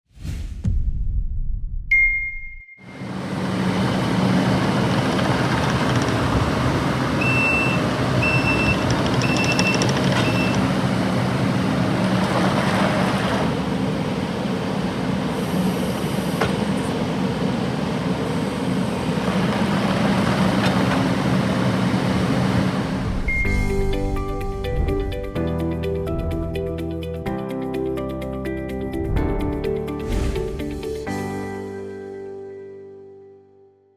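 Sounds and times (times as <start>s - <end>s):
diesel engine running: 2.9s - 25.2s
reversing alarm beeping: 7.2s - 10.8s, 23.2s - 23.8s.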